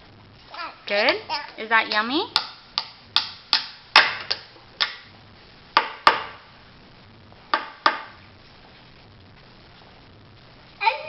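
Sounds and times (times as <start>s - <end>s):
tableware clicking and tapping: 2.4s - 5.0s, 7.6s - 8.2s.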